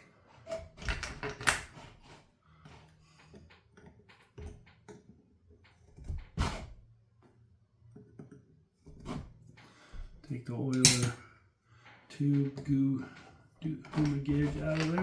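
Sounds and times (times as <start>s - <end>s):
tools and metal parts clicking: 10.8s - 11.2s.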